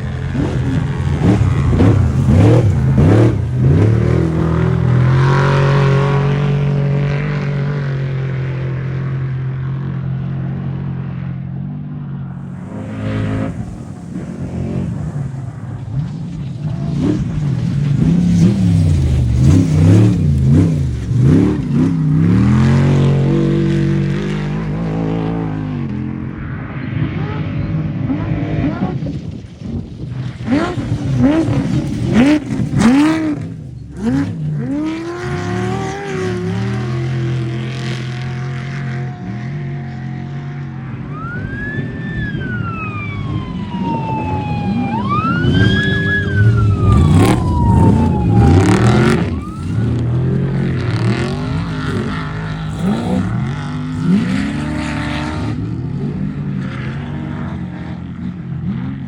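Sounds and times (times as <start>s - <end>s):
truck engines revving: 0.0s - 59.0s
high whine: 41.4s - 55.0s.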